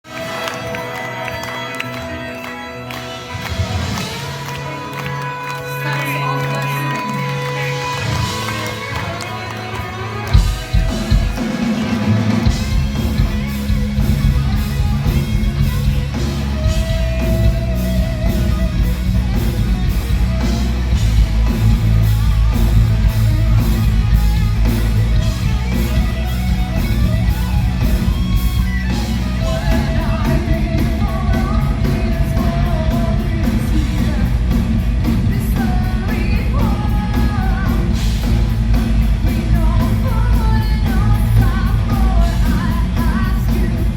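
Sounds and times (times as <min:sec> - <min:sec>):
bass guitar: 0:00.0 - 0:43.9
distorted guitars: 0:00.0 - 0:43.9
lead guitar melody: 0:00.1 - 0:43.9
fast drum beat: 0:10.3 - 0:43.9.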